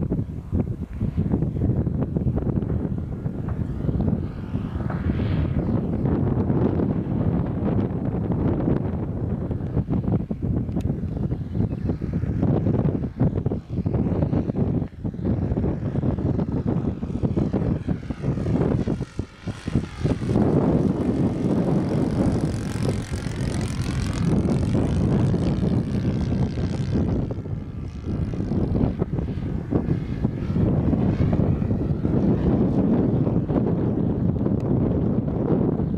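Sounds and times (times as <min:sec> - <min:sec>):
model airplane engine passing: 0:00.0 - 0:35.9
wind buffeting microphone: 0:00.0 - 0:35.9.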